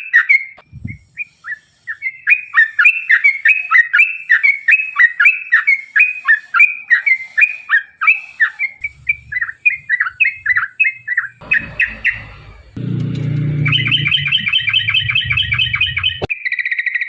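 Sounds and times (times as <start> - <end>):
bird song chattering notes: 8.7 - 17.0.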